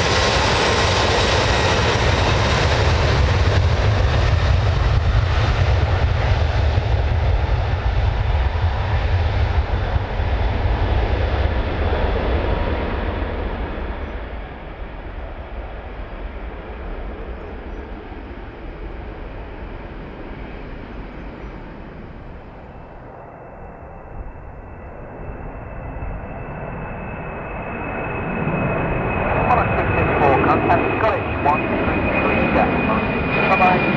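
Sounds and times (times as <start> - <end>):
jet engines at takeoff: 0.0 - 33.9
high-pitched whine: 23.0 - 33.9.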